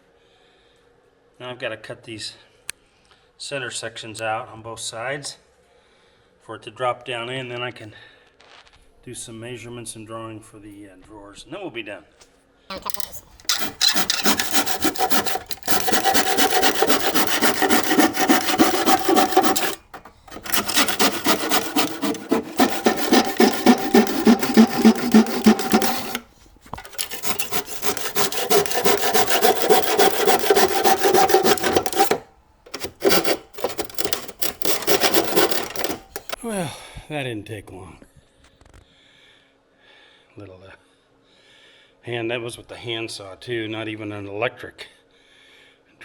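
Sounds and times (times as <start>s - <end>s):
handsaw cutting wood: 12.7s - 36.4s.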